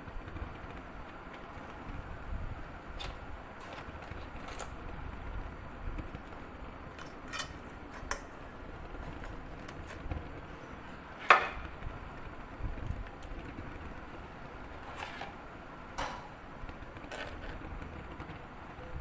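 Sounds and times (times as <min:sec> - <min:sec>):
low background hum: 0:00.0 - 0:19.0.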